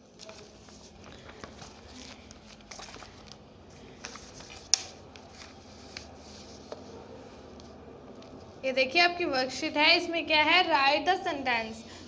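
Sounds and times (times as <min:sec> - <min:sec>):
paper rustling: 0:00.0 - 0:08.4.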